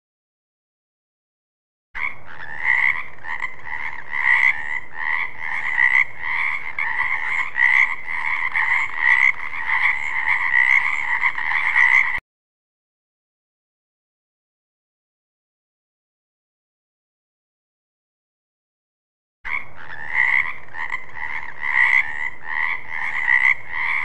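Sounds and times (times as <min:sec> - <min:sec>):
frogs croaking chorus: 0:02.0 - 0:12.2, 0:19.5 - 0:24.0.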